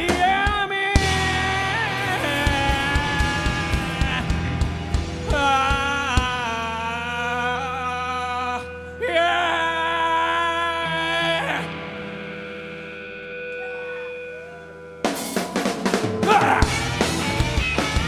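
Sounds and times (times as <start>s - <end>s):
rock band playing: 0.0s - 6.7s, 11.5s - 18.0s
drums: 0.0s - 6.8s, 15.0s - 18.0s.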